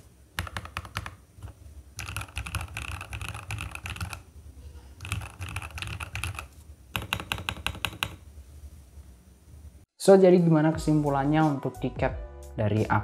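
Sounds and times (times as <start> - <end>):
mechanical keyboard typing: 0.4 - 4.3, 5.0 - 8.2.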